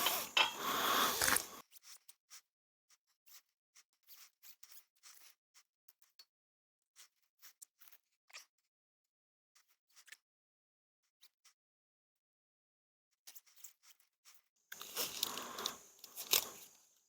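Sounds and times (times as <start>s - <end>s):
ratchet strap rustling and scraping: 0.0s - 1.6s, 14.7s - 17.0s.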